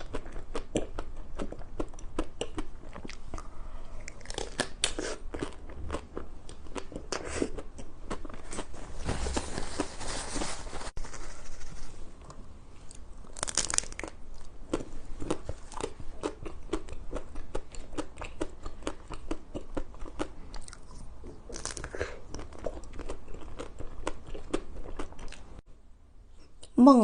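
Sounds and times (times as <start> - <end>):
crunching bites of ice cream: 12.9 - 25.4
chewing crunches: 12.9 - 25.5.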